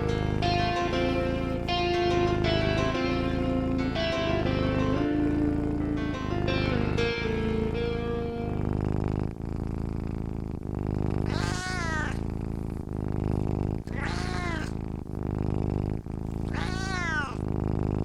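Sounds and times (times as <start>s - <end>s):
cat purring: 0.0s - 18.0s
cat meowing: 11.3s - 12.2s, 13.9s - 14.8s, 16.5s - 17.4s.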